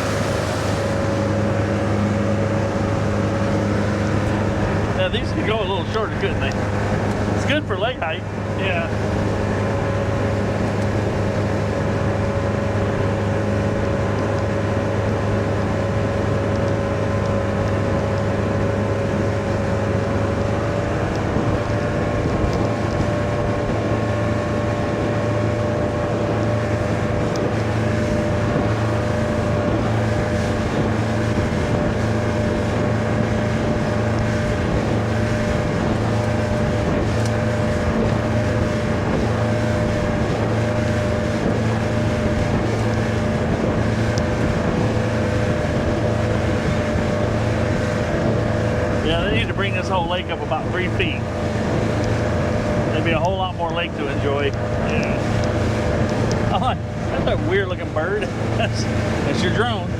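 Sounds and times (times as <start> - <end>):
boat engine running: 0.0 - 59.9
wind on microphone: 0.0 - 59.9.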